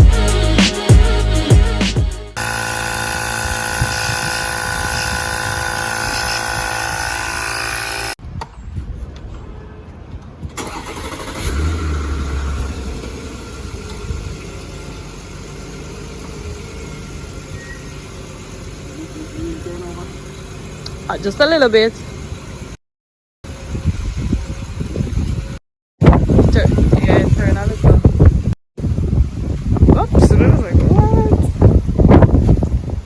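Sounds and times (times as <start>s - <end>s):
tyre inflator pump running: 2.3s - 8.2s.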